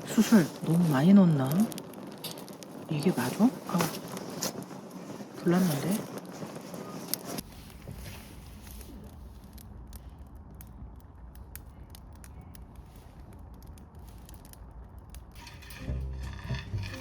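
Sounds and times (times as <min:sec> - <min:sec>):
charcoal crackling and popping: 0:00.0 - 0:17.0
low fire rumble: 0:00.0 - 0:17.0.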